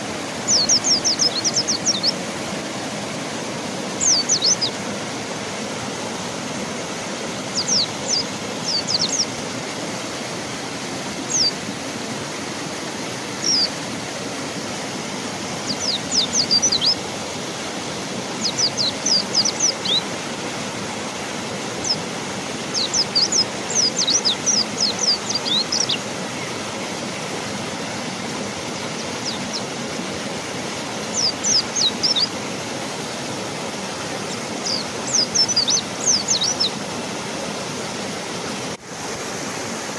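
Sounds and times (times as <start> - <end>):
rushing river water: 0.0 - 39.9
bird chirping: 0.5 - 2.2, 4.0 - 4.8, 7.5 - 9.3, 11.3 - 11.5, 13.4 - 13.7, 15.6 - 17.0, 18.4 - 20.0, 22.7 - 26.5, 29.0 - 29.7, 31.1 - 32.3, 34.6 - 36.8.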